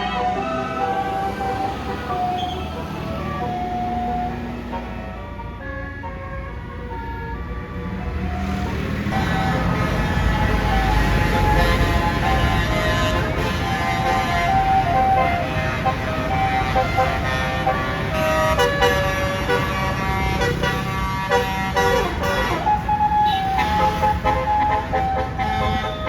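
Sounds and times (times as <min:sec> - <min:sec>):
air horn playing a tune: 0:09.1 - 0:26.0.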